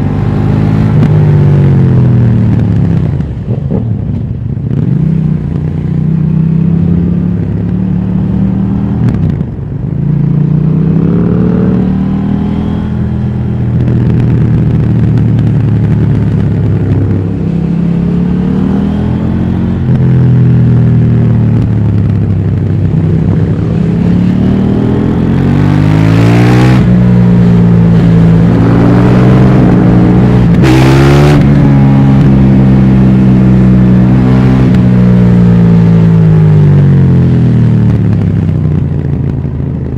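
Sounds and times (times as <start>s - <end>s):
motorcycle engine accelerating: 0.0s - 39.9s.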